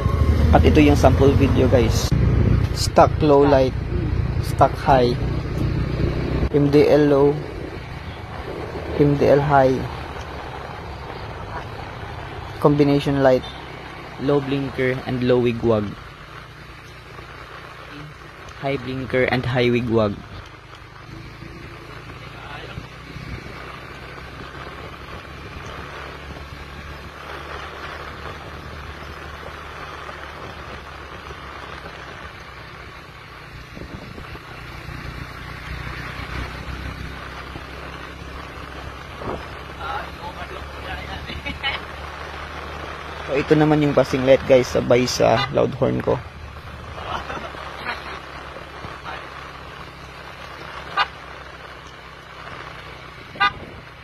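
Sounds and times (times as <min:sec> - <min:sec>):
motorcycle engine running: 0:00.0 - 0:54.0
loud horn blast: 0:45.1 - 0:45.9, 0:53.3 - 0:53.8.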